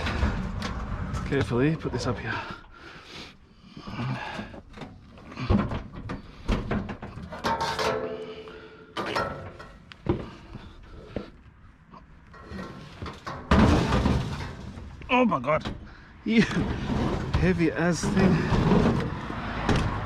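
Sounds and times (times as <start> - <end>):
metal casing knocks and bangs: 12.4 - 15.0.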